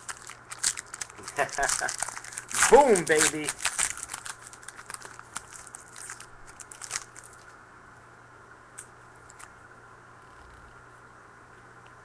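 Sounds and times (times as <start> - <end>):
foil wrapper crinkling and tearing: 0.0 - 7.5
steady low hum: 0.0 - 12.0.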